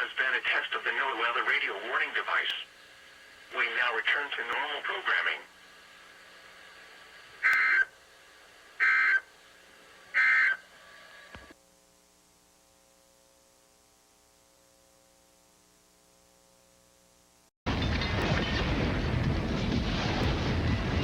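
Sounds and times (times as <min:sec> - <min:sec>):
faint steady hum: 0:00.0 - 0:17.5
buzzy digital squawks: 0:07.4 - 0:07.9, 0:08.8 - 0:09.3, 0:10.1 - 0:10.7.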